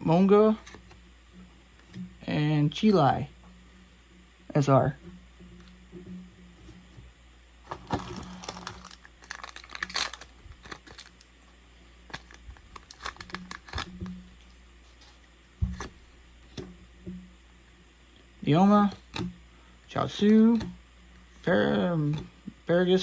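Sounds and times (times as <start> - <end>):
foil wrapper crinkling and tearing: 7.8 - 11.3, 12.1 - 14.1
soft thump: 15.6 - 15.9.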